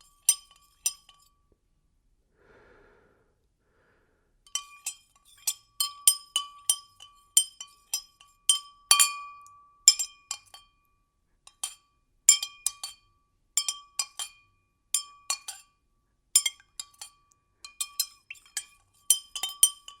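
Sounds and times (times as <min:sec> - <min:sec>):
spoon clinking in a glass: 0:00.0 - 0:01.4, 0:04.5 - 0:10.8, 0:11.5 - 0:15.7, 0:16.4 - 0:20.0.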